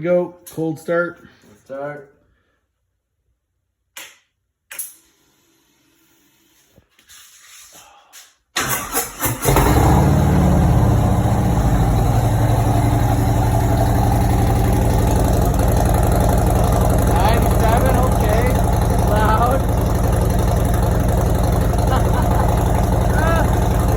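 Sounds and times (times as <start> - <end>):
motorcycle starter cranking: 8.6 - 10.8, 14.4 - 23.9
motorcycle engine idling loudly: 9.5 - 23.9.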